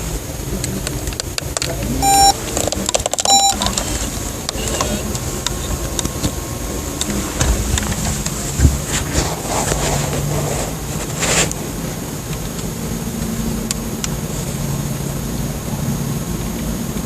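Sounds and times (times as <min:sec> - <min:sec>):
short high beeps: 0:02.0 - 0:02.4, 0:03.3 - 0:03.7.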